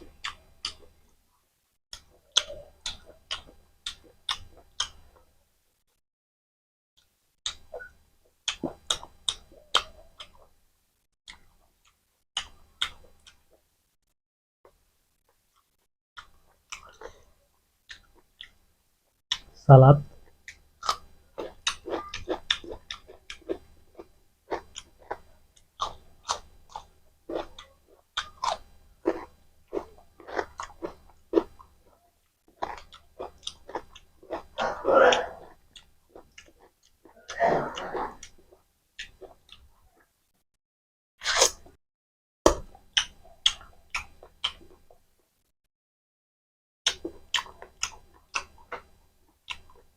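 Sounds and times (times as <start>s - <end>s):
wet mouth clicks and chewing: 0.2s - 0.9s, 1.9s - 5.1s, 7.5s - 10.5s, 11.3s - 13.6s, 15.6s - 17.2s, 17.8s - 18.6s, 19.3s - 19.5s, 20.2s - 32.0s, 32.6s - 34.6s, 35.4s - 40.1s, 42.5s - 45.0s, 46.9s - 49.9s.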